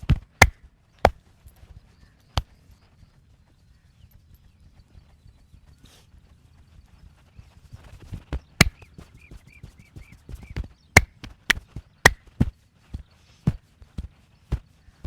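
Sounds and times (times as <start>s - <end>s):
faint high chirping: 0.8s - 11.1s
wooden stick hitting body: 8.6s - 8.8s, 11.0s - 12.5s.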